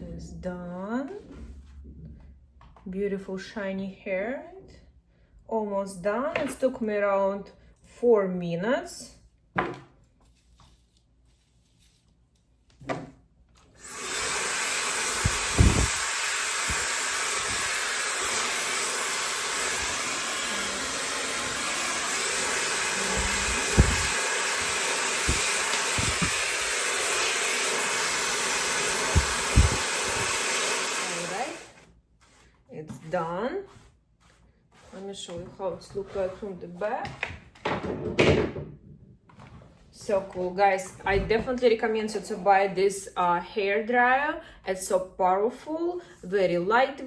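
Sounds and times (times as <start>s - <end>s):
hair dryer blowing: 13.8s - 31.8s.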